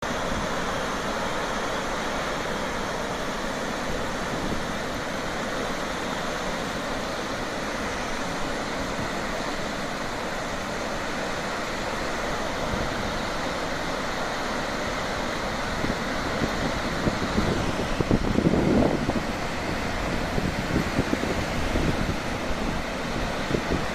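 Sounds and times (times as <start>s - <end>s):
floodwater rushing through spillway: 0.0s - 23.9s.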